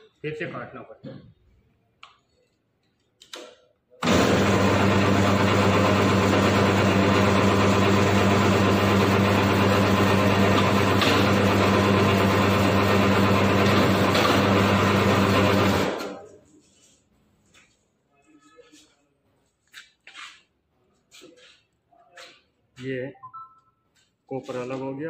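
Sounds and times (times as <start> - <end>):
wire stripping machine running: 4.0 - 16.3.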